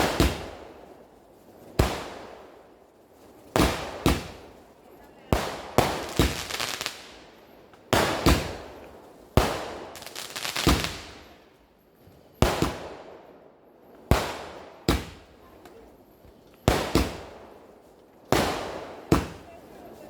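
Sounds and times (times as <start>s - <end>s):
firecracker bangs echoing: 0.0s - 0.8s, 1.7s - 2.7s, 3.4s - 11.5s, 12.4s - 13.4s, 14.0s - 15.7s, 16.6s - 17.7s, 18.3s - 20.0s.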